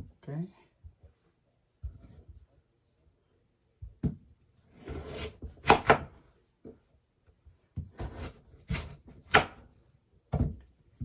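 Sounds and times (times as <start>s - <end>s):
knife scraping cutting board: 4.7s - 6.0s, 8.0s - 9.5s
knife cutting radish on board: 4.7s - 6.1s, 7.8s - 9.6s.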